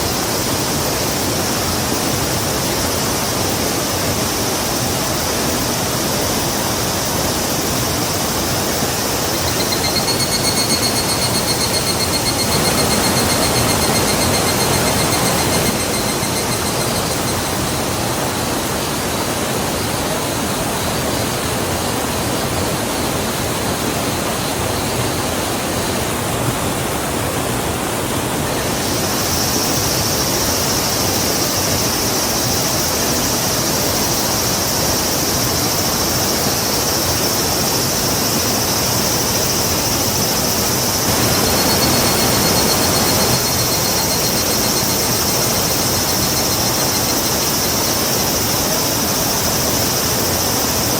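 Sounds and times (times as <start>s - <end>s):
river water rushing: 0.0s - 50.9s
high-pitched buzz: 8.5s - 18.1s, 40.2s - 48.4s.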